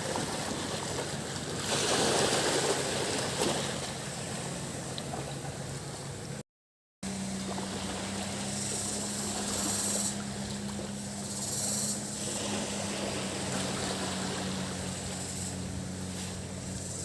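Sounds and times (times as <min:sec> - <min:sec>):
surf washing: 0:00.0 - 0:06.1, 0:07.1 - 0:17.0
low engine hum: 0:00.0 - 0:06.4, 0:07.0 - 0:17.0
cicadas buzzing: 0:07.0 - 0:17.0.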